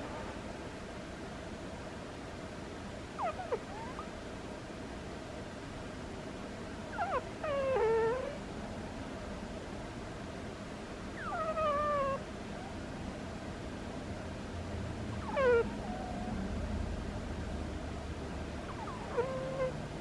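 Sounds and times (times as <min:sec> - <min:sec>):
cat snoring with squeaks: 0:03.2 - 0:04.1, 0:07.0 - 0:08.4, 0:11.2 - 0:12.2, 0:15.2 - 0:16.4, 0:18.6 - 0:19.8.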